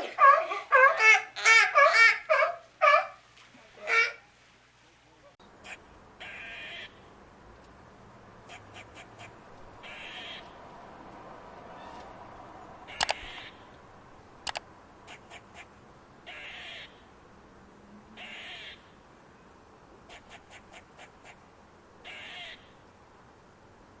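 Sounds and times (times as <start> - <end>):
bird giving harsh raspy calls: 0.0 - 3.2, 3.8 - 4.3
sharp clicks: 13.0 - 13.4.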